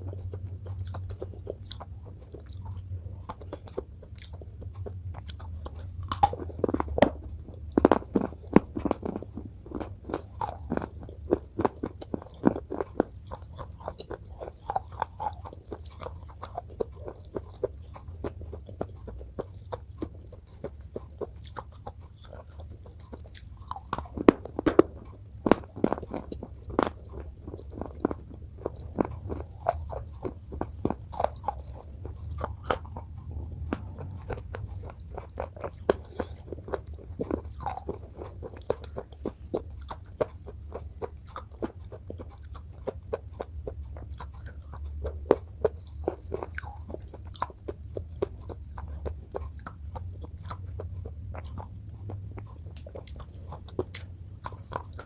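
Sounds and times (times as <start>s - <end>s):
crunchy biting and chewing: 0.0s - 55.0s
steady low hum: 0.0s - 55.0s.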